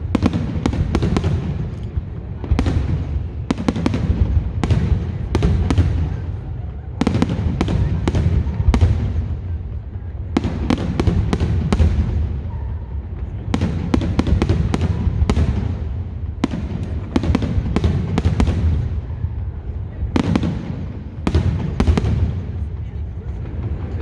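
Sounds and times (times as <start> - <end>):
fireworks bursting with sharp bangs: 0.0 - 24.0.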